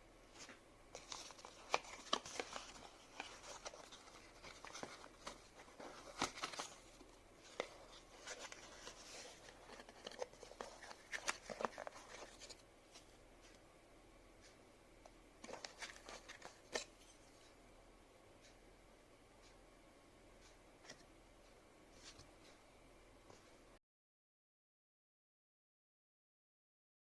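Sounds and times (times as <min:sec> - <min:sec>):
plastic packaging crinkling: 0:01.0 - 0:07.0.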